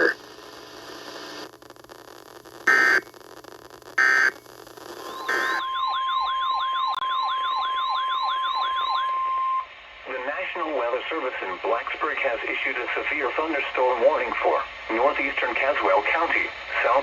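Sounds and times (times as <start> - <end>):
radio hiss: 0.0 - 5.6, 9.8 - 17.0
digital data squawks: 5.0 - 6.2.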